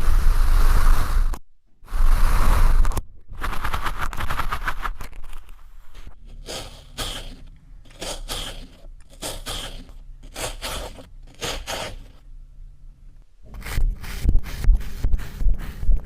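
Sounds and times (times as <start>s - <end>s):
crunching strokes: 0.0s - 12.2s
kinetic sand being sliced: 8.0s - 12.1s.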